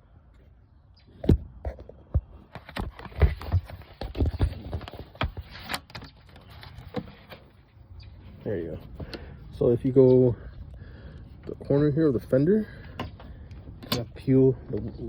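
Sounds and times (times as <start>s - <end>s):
handling knocks and thumps: 1.2s - 7.6s
scraping rustle: 1.6s - 9.7s.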